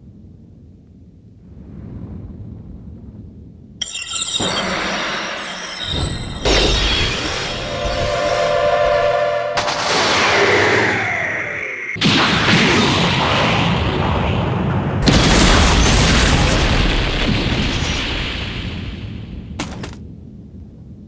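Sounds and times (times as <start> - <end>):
explosion boom sound effect: 15.0 - 18.8.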